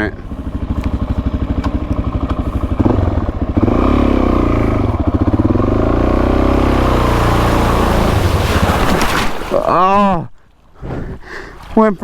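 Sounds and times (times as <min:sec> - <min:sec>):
motorcycle engine revving: 0:00.0 - 0:09.6.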